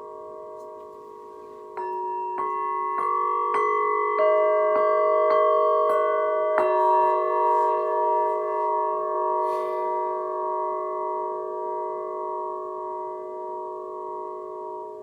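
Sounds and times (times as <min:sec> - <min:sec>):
singing bowl ringing: 0:00.0 - 0:15.0.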